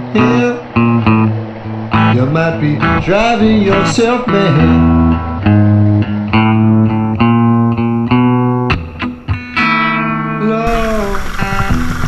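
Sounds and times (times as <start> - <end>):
person singing: 0.0 - 0.8, 2.1 - 5.1, 10.3 - 11.2
steady noise: 0.0 - 9.4, 10.6 - 12.0
blues music with guitar: 0.0 - 12.0.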